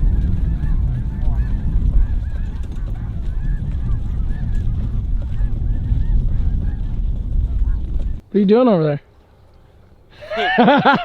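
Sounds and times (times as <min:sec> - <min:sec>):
geese honking: 0:00.0 - 0:08.2
steady low rumble: 0:00.0 - 0:08.2.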